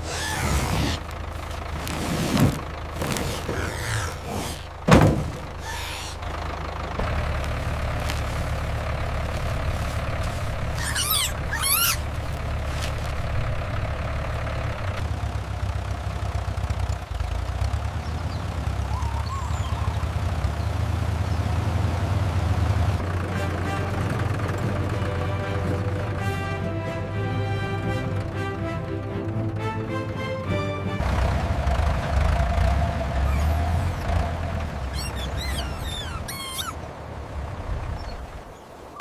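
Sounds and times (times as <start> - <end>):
engine running low rumble: 0.0 - 39.0
wavering high squeals: 10.7 - 12.3, 32.4 - 36.8.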